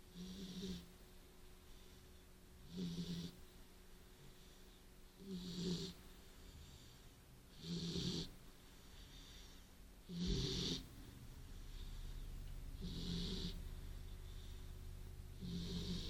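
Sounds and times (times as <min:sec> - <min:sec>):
dog snoring: 0:00.0 - 0:00.9, 0:02.6 - 0:03.4, 0:05.2 - 0:06.9, 0:07.5 - 0:08.4, 0:09.0 - 0:12.2, 0:12.8 - 0:14.6, 0:15.4 - 0:16.0.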